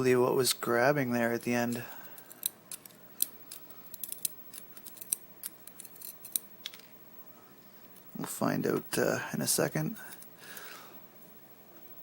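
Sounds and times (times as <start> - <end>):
small metal lock parts clicking: 2.2 - 6.9.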